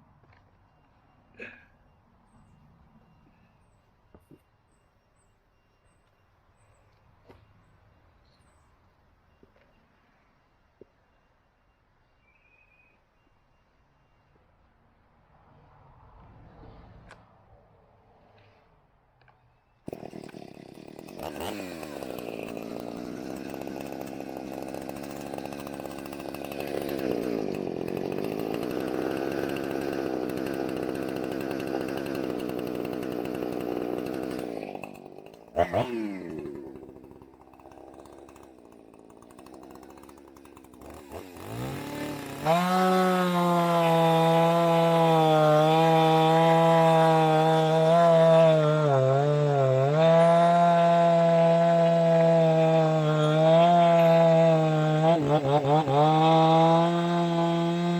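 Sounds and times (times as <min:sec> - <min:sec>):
chainsaw engine running: 0:19.9 - 0:57.9.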